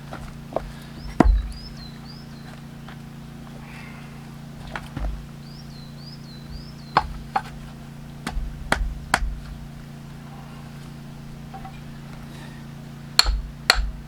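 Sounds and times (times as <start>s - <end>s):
axe chopping firewood: 0.0s - 1.7s, 6.5s - 9.8s, 13.1s - 14.0s.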